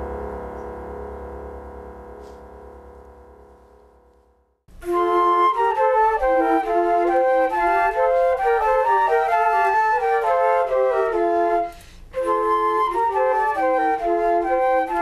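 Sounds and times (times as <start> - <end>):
flute-like wind instruments: 4.8 - 15.0.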